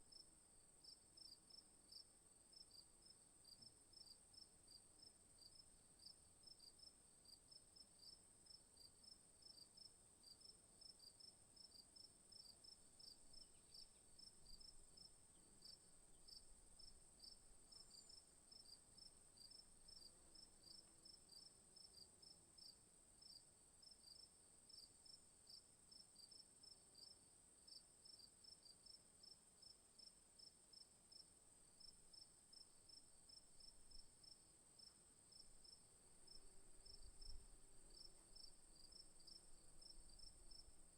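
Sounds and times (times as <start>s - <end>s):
crickets chirping: 11.1s - 27.1s, 30.0s - 40.9s.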